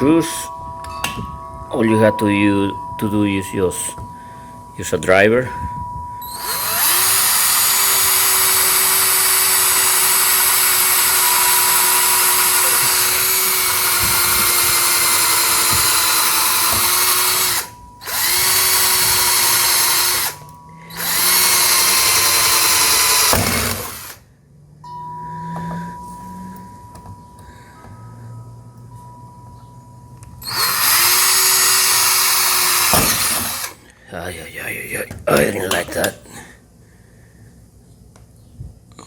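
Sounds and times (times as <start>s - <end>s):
power drill boring: 6.2s - 24.2s, 30.4s - 33.8s.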